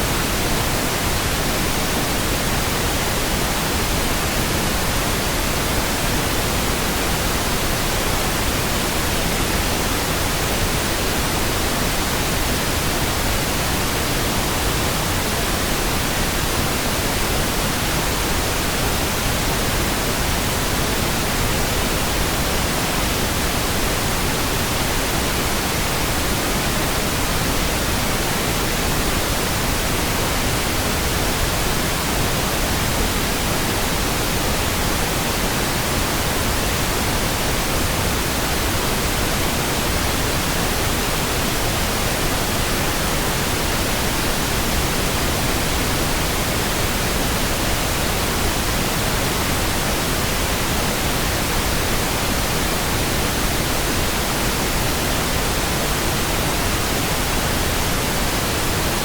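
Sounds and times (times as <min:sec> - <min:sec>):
steady pink noise hiss: 0:00.0 - 0:59.0.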